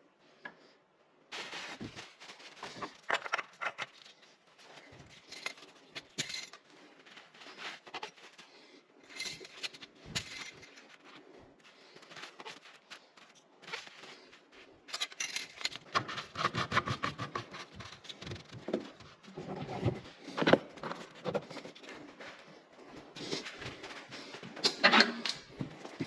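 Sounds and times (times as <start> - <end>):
handling clicks knocks and scrapes: 2.6 - 22.2.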